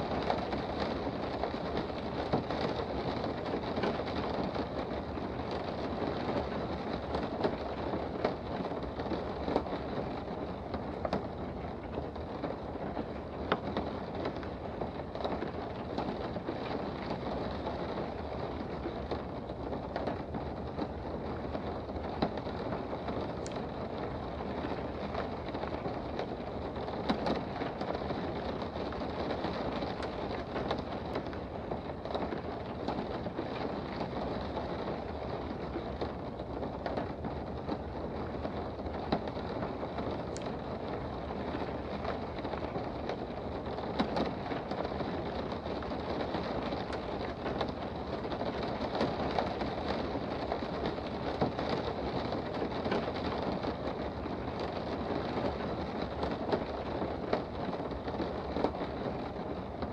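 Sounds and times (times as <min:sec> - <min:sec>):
rain pattering: 0:00.0 - 0:59.9.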